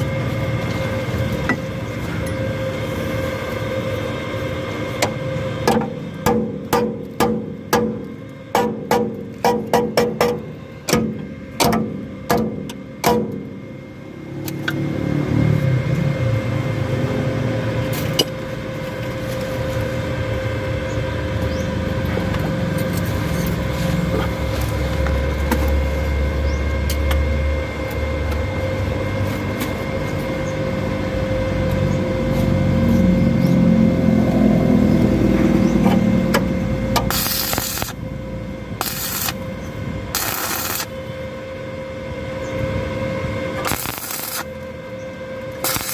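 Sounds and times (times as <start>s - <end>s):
vehicle engine running: 0.0s - 45.9s
hissing bursts: 37.1s - 38.0s, 40.1s - 40.9s, 43.6s - 44.5s, 45.6s - 45.9s.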